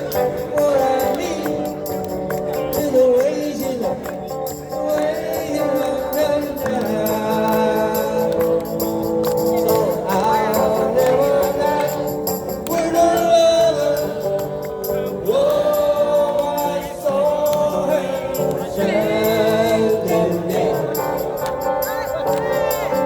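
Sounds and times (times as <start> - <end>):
guitar accompaniment: 0.0 - 23.0.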